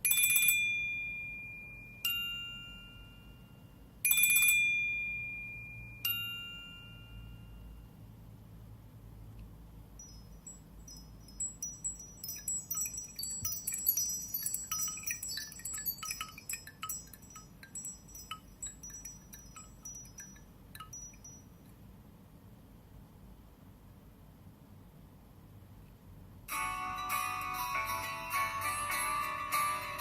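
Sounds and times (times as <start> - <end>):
tinkling chime ringtone: 0.0 - 8.0, 10.0 - 21.7, 26.5 - 30.0.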